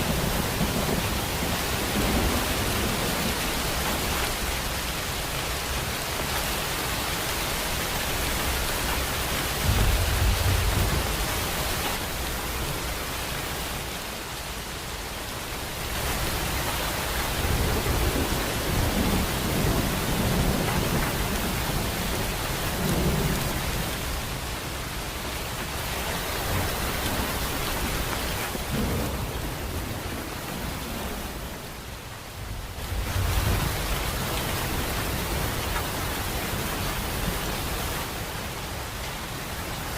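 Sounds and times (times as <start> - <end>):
thunder rumbling: 0.0 - 4.0, 9.6 - 11.8, 26.4 - 31.7
steady rain: 0.0 - 39.9.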